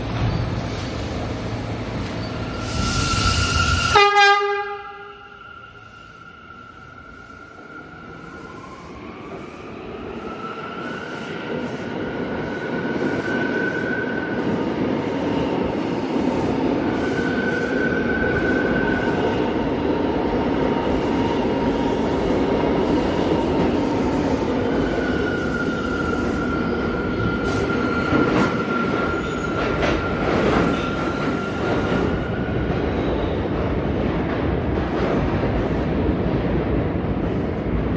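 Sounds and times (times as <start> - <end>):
train rumbling by: 0.0 - 37.9
train horn blasts: 3.8 - 5.4.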